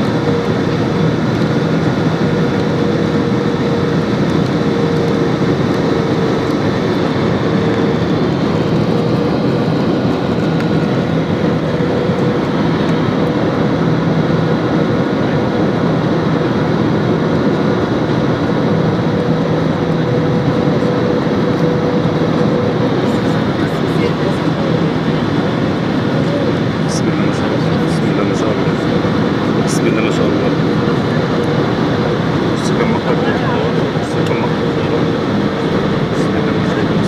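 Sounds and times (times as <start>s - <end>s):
jet engines and airflow roaring: 0.0s - 37.0s.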